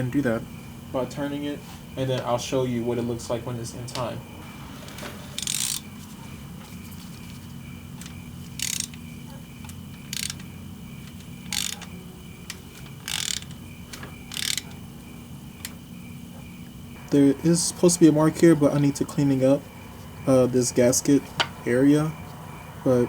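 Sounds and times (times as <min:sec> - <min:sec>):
steady low hum: 0:00.0 - 0:23.0
ratchet wrench clicking: 0:05.4 - 0:05.9, 0:08.0 - 0:09.0, 0:09.6 - 0:11.9, 0:12.8 - 0:13.6, 0:14.2 - 0:14.8.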